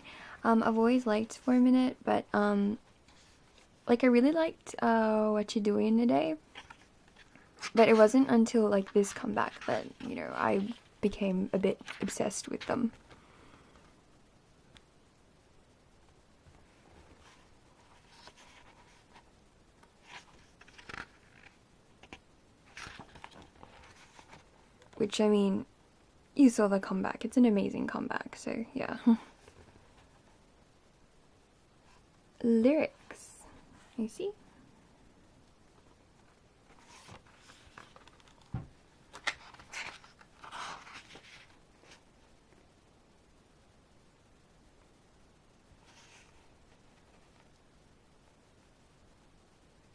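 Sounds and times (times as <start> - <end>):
paper rustling of pages turned: 6.4 - 13.2, 16.5 - 25.1, 35.8 - 42.1, 45.8 - 47.6.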